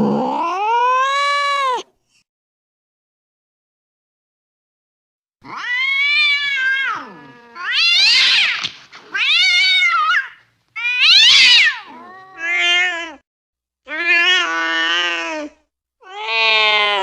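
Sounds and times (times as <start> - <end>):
angry cat yowling: 0.0 - 1.9, 5.4 - 13.2, 13.9 - 17.0.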